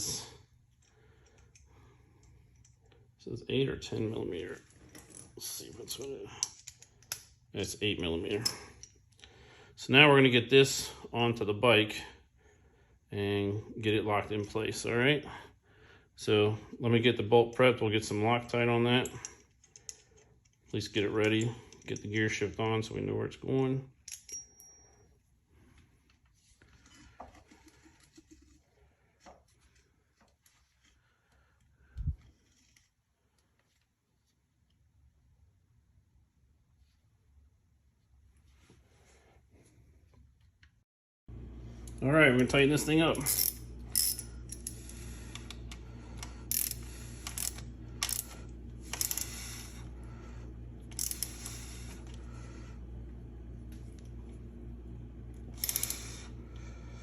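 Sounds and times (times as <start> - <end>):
faint clicks of small parts: 0.7 - 3.0, 6.0 - 7.3, 19.0 - 22.6
steady low hum: 41.3 - 57.0
ratchet wrench clicking: 43.3 - 45.5, 46.2 - 49.5, 50.9 - 51.9, 55.6 - 56.2.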